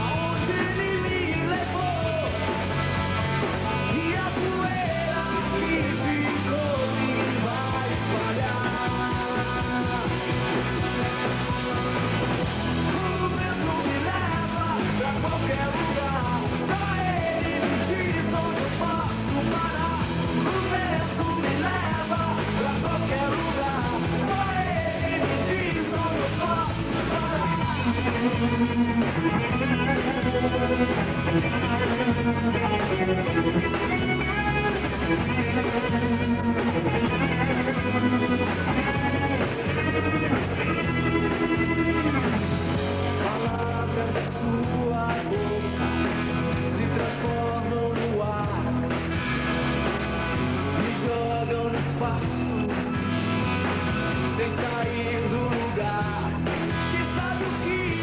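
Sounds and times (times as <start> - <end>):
bass and drums: 0.0 - 58.0
rock band playing: 0.0 - 58.0
vocals: 0.0 - 58.0
electric guitar bending notes: 26.4 - 43.7.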